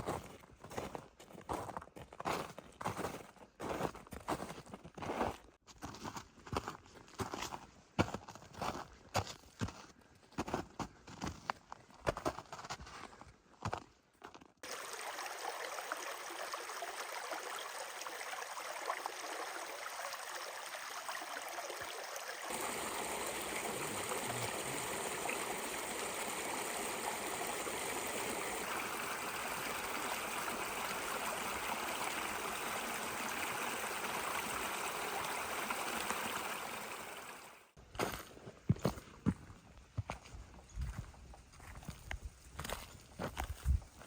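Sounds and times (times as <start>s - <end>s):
stream rushing: 14.6s - 37.7s.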